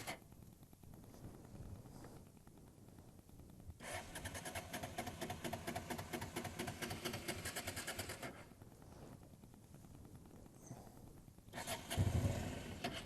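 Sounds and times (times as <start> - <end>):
electric starter cranking engine: 3.8 - 8.4, 11.6 - 13.0.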